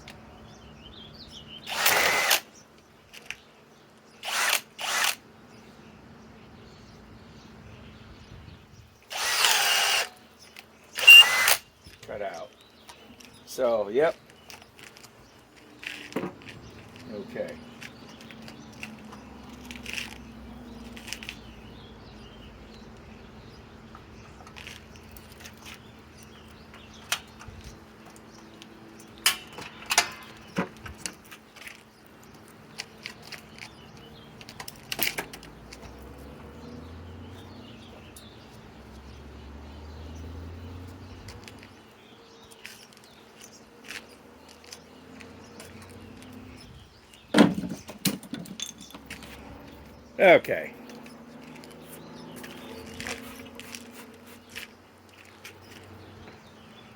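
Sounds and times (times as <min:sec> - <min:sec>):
tools clicking and knocking: 0:29.0 - 0:31.8, 0:47.4 - 0:49.4.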